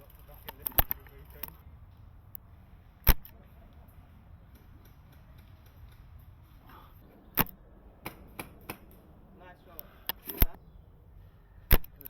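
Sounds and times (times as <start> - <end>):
rifle bolt clicks: 9.8 - 10.6, 11.7 - 12.0.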